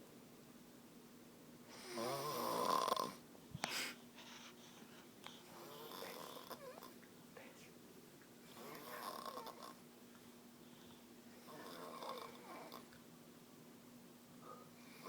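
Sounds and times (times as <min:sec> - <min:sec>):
woman snoring: 0:01.8 - 0:03.2, 0:05.5 - 0:06.9, 0:08.5 - 0:09.8, 0:11.5 - 0:12.9
soft breath: 0:03.5 - 0:06.2, 0:10.2 - 0:11.6, 0:14.4 - 0:15.0.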